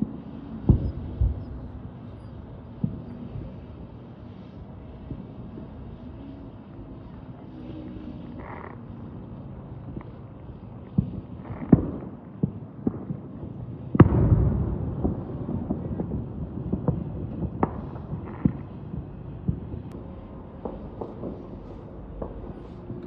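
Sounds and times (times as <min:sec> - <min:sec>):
fireworks bangs and pops: 0:00.0 - 0:03.9, 0:04.9 - 0:23.0
long rumble: 0:14.1 - 0:23.0.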